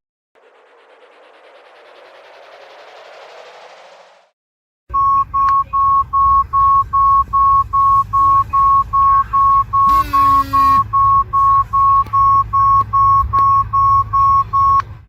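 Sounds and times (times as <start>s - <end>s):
low hum: 0.4s - 4.3s
phone low-battery beeps: 4.9s - 14.8s.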